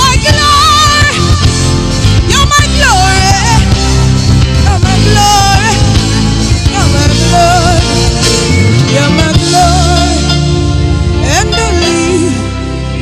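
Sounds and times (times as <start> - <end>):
backing band sustained low chords: 0.0 - 13.0
person singing ornamented melody: 11.2 - 13.0.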